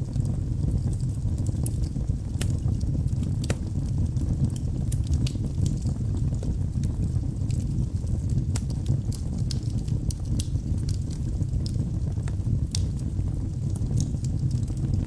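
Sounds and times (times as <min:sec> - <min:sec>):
burning logs crackling and popping: 0:00.0 - 0:15.0
wood fire rumbling: 0:00.0 - 0:15.0.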